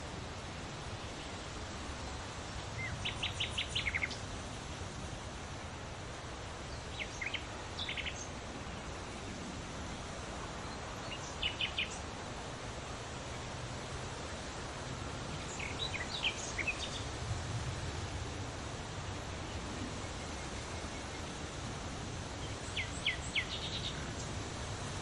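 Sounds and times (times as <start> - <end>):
songbird chirping: 2.5 - 4.3, 6.6 - 9.2, 10.4 - 12.1, 15.3 - 17.2, 22.2 - 24.4.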